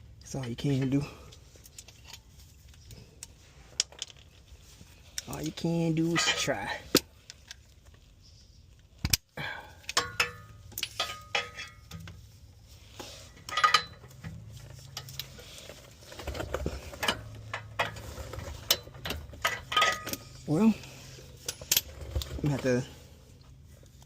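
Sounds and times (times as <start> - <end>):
metal tools clinking on metal: 5.4 - 6.8, 9.8 - 12.2, 13.3 - 15.3, 16.9 - 22.9.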